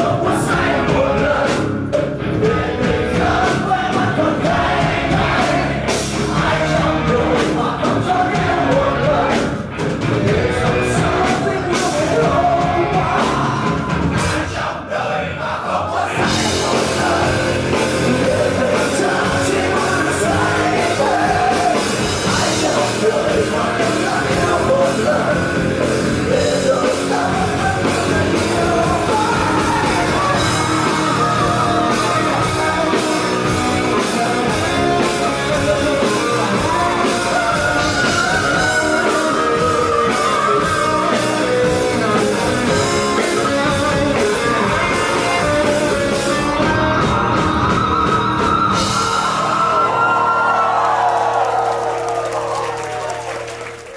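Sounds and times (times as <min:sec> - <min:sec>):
rock band playing: 0:00.0 - 0:14.8, 0:16.0 - 0:53.9
person singing: 0:00.0 - 0:53.6.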